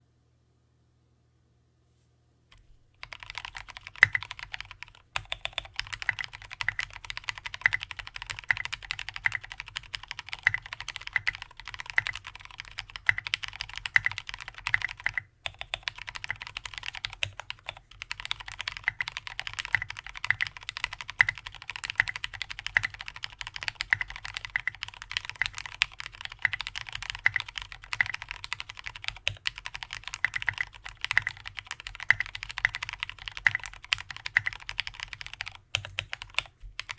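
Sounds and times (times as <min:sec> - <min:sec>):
fast keyboard typing clacks: 0:03.0 - 0:36.9.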